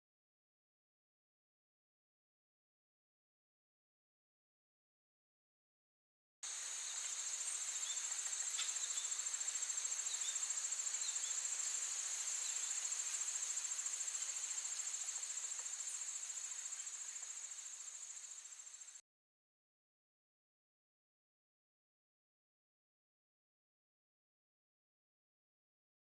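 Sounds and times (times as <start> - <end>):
faint chirps: 6.4 - 19.0
high-pitched insect trill: 6.4 - 19.0.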